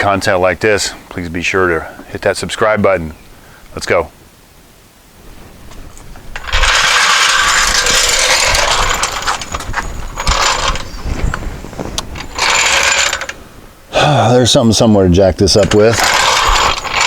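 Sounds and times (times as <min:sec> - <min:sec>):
mechanism ratcheting rattle: 0:06.4 - 0:10.9, 0:12.2 - 0:13.4, 0:15.6 - 0:17.0.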